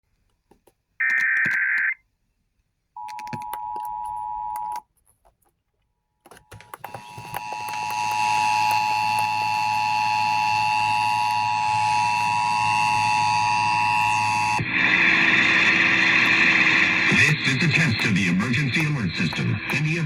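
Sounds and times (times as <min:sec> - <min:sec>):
crackling clicks: 0:06.2 - 0:20.0
hum: 0:06.5 - 0:20.0.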